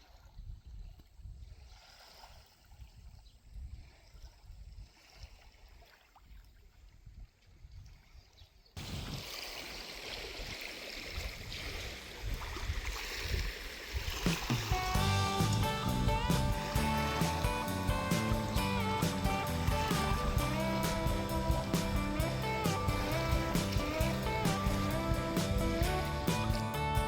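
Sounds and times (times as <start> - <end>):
wind rumble on microphone: 0.0 - 9.3, 10.4 - 27.0
water washing on shore: 8.8 - 26.8.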